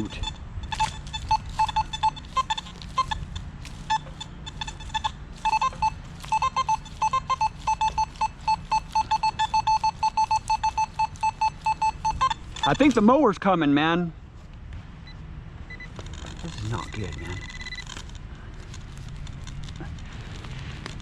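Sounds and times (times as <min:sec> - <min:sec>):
metal detector beeping: 0:00.0 - 0:13.2, 0:15.1 - 0:18.0.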